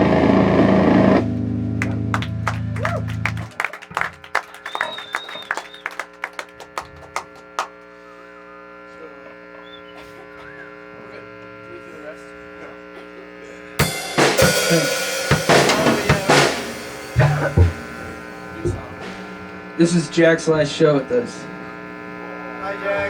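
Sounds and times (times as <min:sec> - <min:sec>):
amplifier hum and buzz: 0:00.0 - 0:04.3, 0:06.5 - 0:23.0
applause: 0:01.8 - 0:08.0
drum kit snare and cymbal hits: 0:13.8 - 0:19.6.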